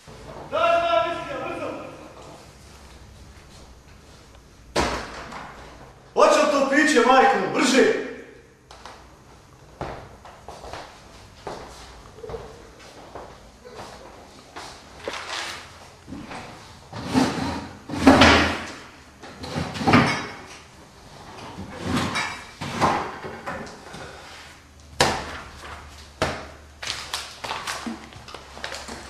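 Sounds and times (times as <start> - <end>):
drawers and cupboard doors opening: 21.2 - 24.2.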